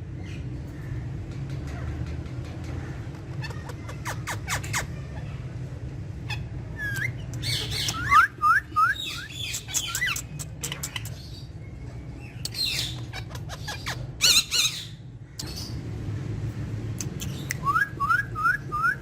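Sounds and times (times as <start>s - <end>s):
steady low hum: 0.0s - 19.0s
parrot chirps: 6.2s - 11.5s.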